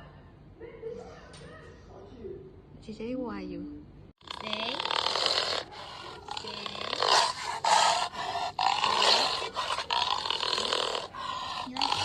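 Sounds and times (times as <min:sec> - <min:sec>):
dog growling: 0:04.2 - 0:12.0.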